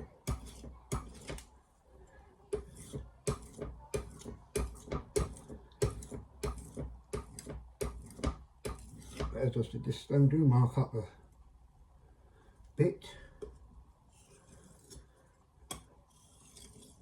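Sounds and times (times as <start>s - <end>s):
knife on sharpening stone: 0.3s - 1.4s, 2.6s - 9.3s, 14.2s - 15.0s, 15.7s - 17.0s.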